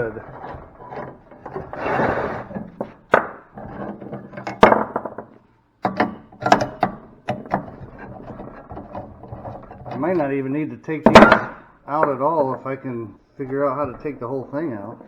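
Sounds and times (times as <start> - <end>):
hand tool scraping metal: 0.0 - 2.8
sharp knocks and clinks: 11.1 - 12.7.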